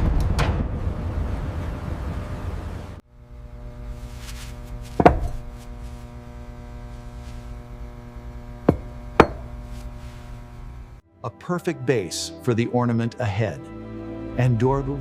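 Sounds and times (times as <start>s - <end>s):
steady low hum: 0.6s - 11.0s
sharp knocks: 4.9s - 5.5s, 8.7s - 9.5s.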